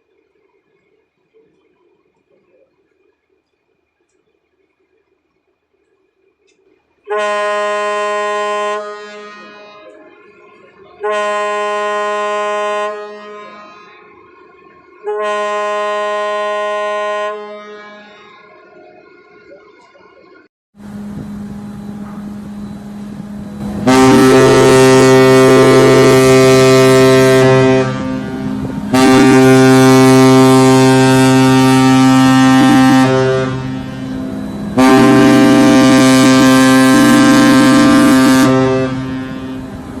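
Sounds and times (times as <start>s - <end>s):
quieter steady horn tone: 6.5s - 40.0s
ship's horn blasts: 7.0s - 19.3s, 20.8s - 40.0s.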